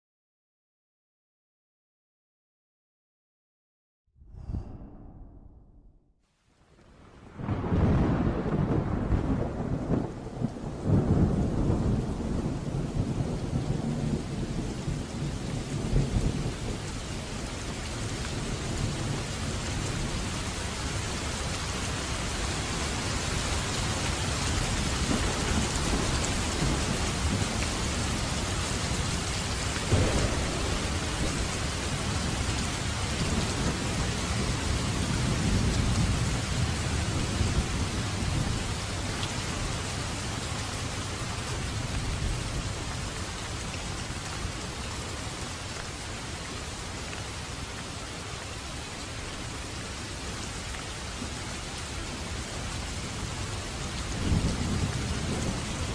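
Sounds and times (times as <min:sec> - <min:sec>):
thunder rumbling: 0:04.2 - 0:06.1, 0:07.2 - 0:39.1
heavy rain falling: 0:06.8 - 0:55.9
sharp thunderclap: 0:07.3 - 0:14.7, 0:29.8 - 0:34.6.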